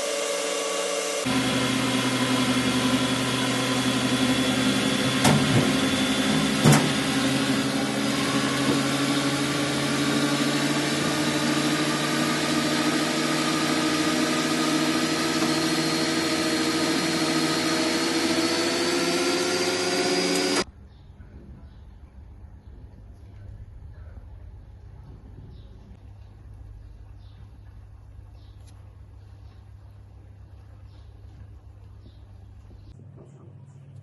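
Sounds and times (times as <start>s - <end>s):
power tool motor running: 0.0s - 20.7s.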